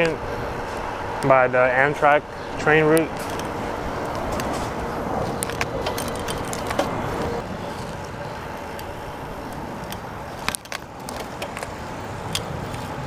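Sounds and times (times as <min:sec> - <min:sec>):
bicycle clicks and rattles: 0:00.0 - 0:13.0
traffic rushing: 0:00.0 - 0:13.0
wind: 0:00.0 - 0:13.0.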